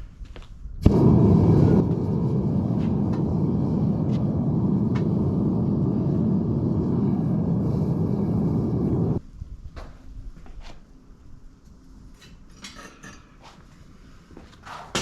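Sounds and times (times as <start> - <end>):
furnace burner rushing: 0.8 - 9.2.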